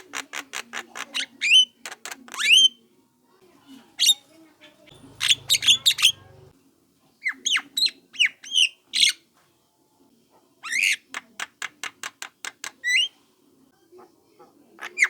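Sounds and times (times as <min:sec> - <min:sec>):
bird squawking and calling: 0:04.9 - 0:06.5.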